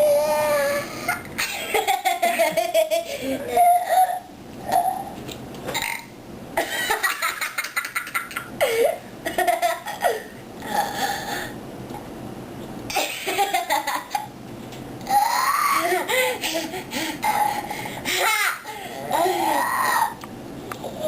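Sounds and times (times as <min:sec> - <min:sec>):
person laughing: 0:15.8 - 0:17.2.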